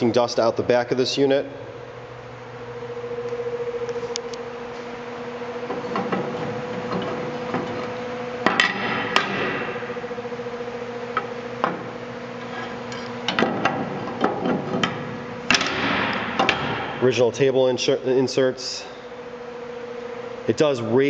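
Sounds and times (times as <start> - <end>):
steady hum: 0.0 - 21.0
metallic knocks and clanks: 5.7 - 9.7, 12.4 - 17.0.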